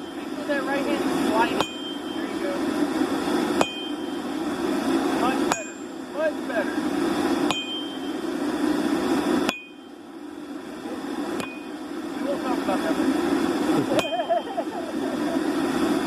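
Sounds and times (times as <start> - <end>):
steady low hum: 0.0 - 16.0
hammer striking hot steel on anvil: 1.5 - 2.4, 3.6 - 4.3, 5.5 - 6.0, 7.5 - 8.2, 9.4 - 10.0, 11.4 - 11.8, 14.0 - 14.2.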